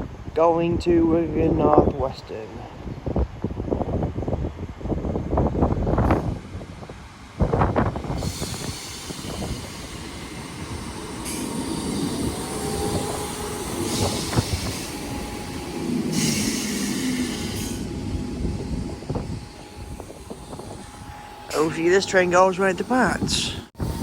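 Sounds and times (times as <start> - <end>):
train rail and brake noise: 5.6 - 24.0
air hissing: 7.8 - 22.5.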